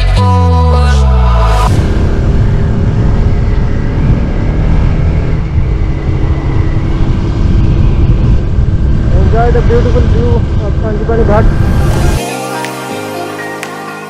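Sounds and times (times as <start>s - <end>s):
background music: 0.0s - 1.8s, 11.6s - 14.0s
wind rush over microphone: 1.7s - 12.2s.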